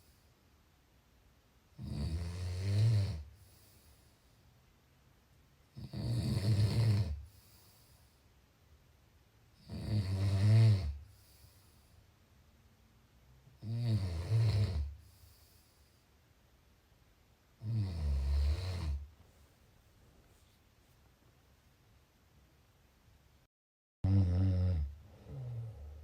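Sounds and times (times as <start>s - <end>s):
person snoring: 1.8s - 3.3s, 5.8s - 7.2s, 9.6s - 11.1s, 13.6s - 15.0s, 17.6s - 19.1s, 24.0s - 26.0s.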